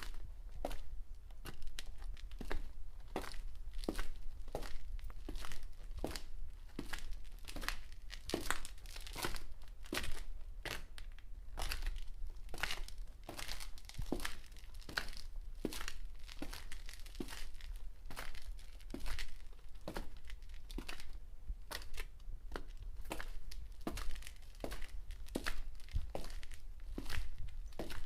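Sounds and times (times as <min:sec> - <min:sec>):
footsteps on concrete: 0:00.0 - 0:28.0.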